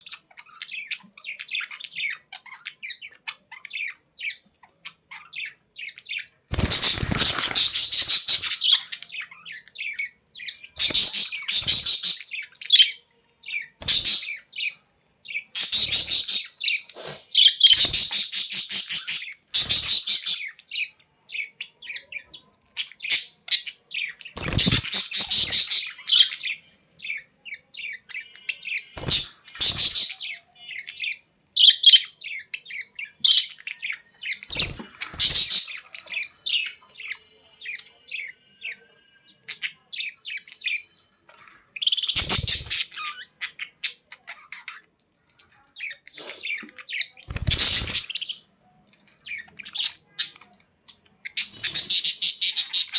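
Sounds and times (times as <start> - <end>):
budgerigars chattering and chirping: 0.0 - 52.9.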